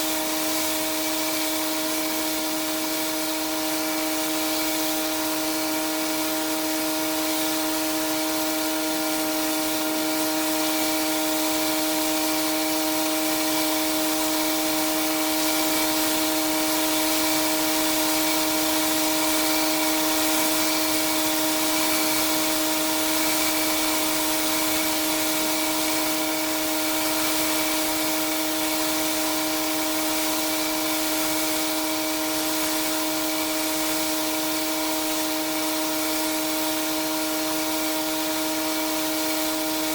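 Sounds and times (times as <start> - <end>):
high-pressure water spray hiss: 0.0 - 39.9
pressure washer machine hum: 0.0 - 39.9.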